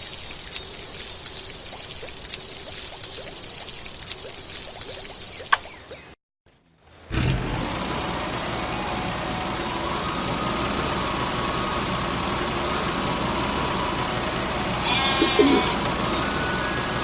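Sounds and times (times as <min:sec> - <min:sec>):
vehicle engine running: 0:06.8 - 0:17.0.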